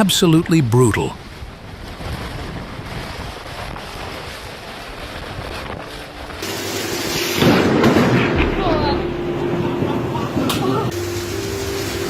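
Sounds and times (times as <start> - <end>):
wind buffeting microphone: 1.2 - 6.4
storm wind gusting: 1.2 - 8.4.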